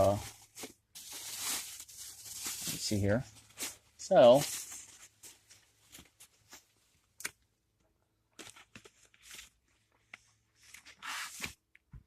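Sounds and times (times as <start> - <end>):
paper rustling: 8.4 - 11.6.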